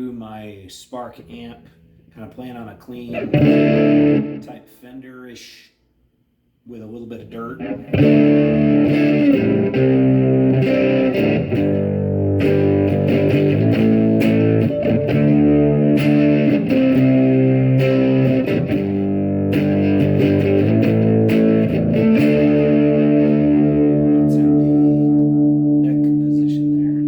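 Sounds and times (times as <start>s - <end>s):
electric guitar strummed chords: 3.1s - 4.5s, 7.6s - 27.0s.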